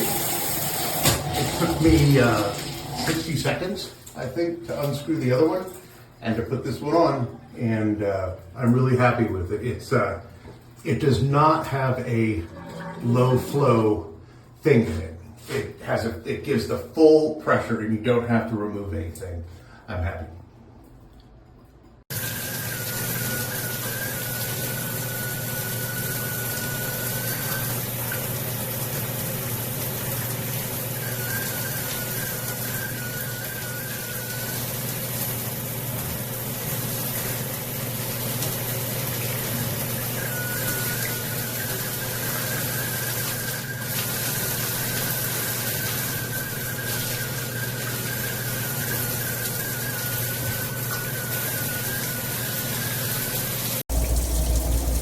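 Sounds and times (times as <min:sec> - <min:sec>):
shower spraying water: 0:00.0 - 0:08.0, 0:14.8 - 0:16.4, 0:22.1 - 0:55.0
low hum: 0:53.9 - 0:55.0.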